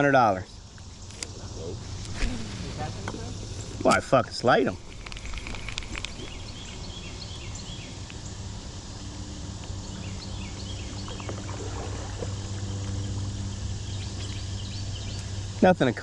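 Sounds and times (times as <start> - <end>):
low hum: 0.4 - 16.0
river flowing: 1.2 - 7.9, 9.8 - 15.4
small bird chirping: 5.0 - 8.4, 13.5 - 15.4.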